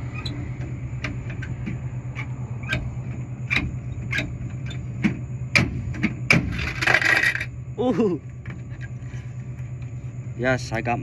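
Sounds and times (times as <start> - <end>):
steady low hum: 0.0 - 11.0
coins clattering: 6.6 - 7.5.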